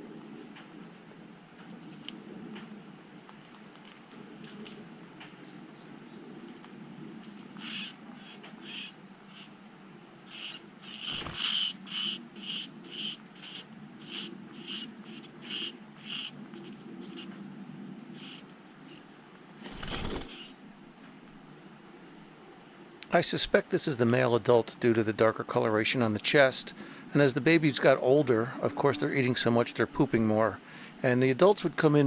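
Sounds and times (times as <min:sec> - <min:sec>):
nestlings begging calls: 0:01.6 - 0:04.0, 0:07.2 - 0:20.6, 0:26.4 - 0:32.0.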